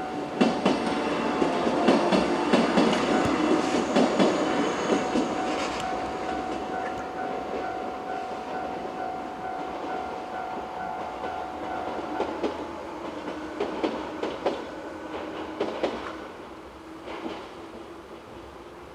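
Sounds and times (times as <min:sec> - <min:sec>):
train passing: 0:00.0 - 0:18.9
train wheels clacking on rail joints: 0:00.1 - 0:07.8, 0:09.6 - 0:16.3, 0:17.0 - 0:18.4
crossing warning signal tone: 0:01.4 - 0:14.3.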